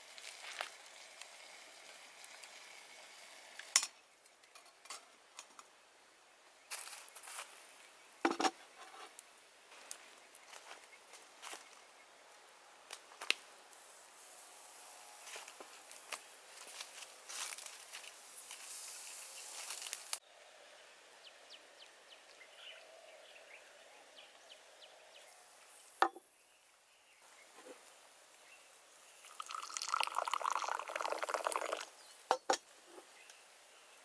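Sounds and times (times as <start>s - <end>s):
liquid pouring: 29.2s - 32.0s.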